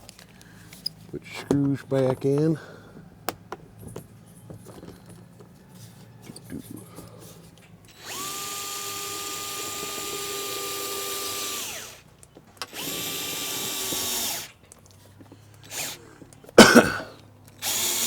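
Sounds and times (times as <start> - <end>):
electric screwdriver motor whine: 7.9 - 14.6, 15.7 - 16.0, 17.6 - 18.0.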